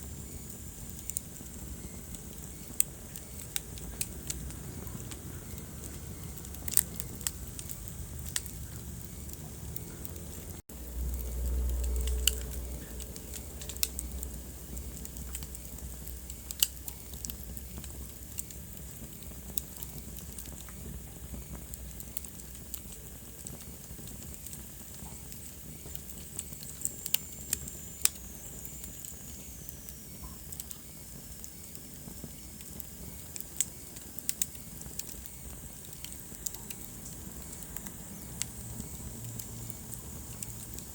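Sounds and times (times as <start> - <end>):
wood fire crackling: 0.0 - 40.9
low rumble: 4.0 - 16.2.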